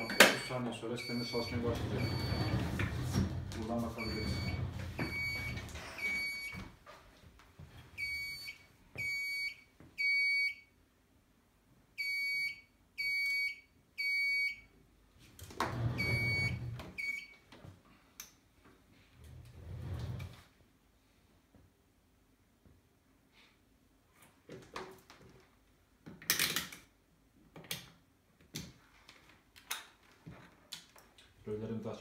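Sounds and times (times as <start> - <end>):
fire alarm beeping: 0.0 - 2.6, 4.0 - 6.6, 8.0 - 10.7, 12.0 - 14.7, 15.9 - 17.3.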